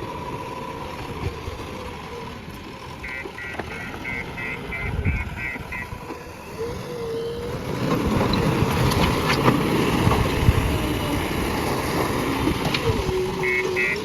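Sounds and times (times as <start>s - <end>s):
diesel engine running under work: 0.0s - 14.0s
rapid high beeping: 3.0s - 5.9s, 13.4s - 14.0s.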